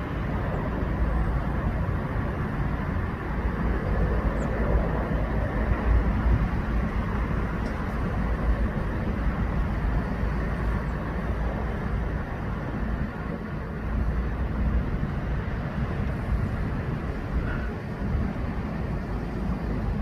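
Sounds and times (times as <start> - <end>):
helicopter flying over: 0.0 - 20.0.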